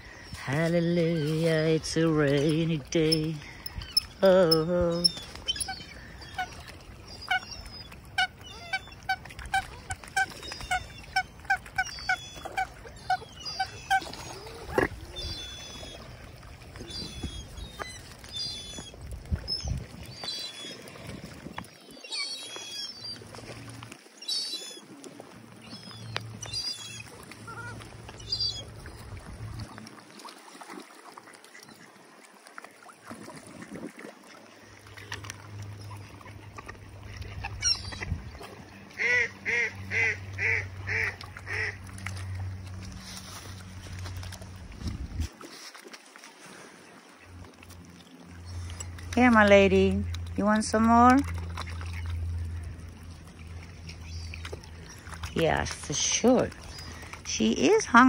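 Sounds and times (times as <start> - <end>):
water birds honking: 0.0 - 58.0
high-pitched bird calls: 3.1 - 16.2, 25.6 - 28.8, 37.3 - 38.2.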